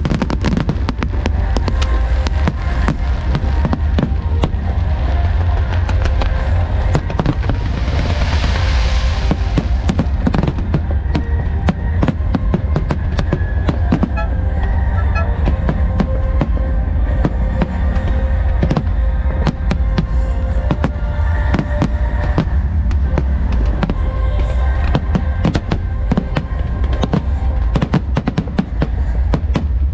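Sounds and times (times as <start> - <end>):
hissing firework burst: 0.0 - 14.2
fireworks bangs and crackles: 0.0 - 29.9
music playing: 0.0 - 29.9.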